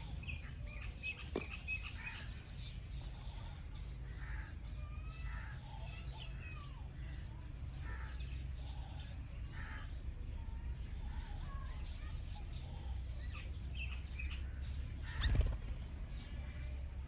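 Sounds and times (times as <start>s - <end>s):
birds chirping: 0.0s - 17.0s.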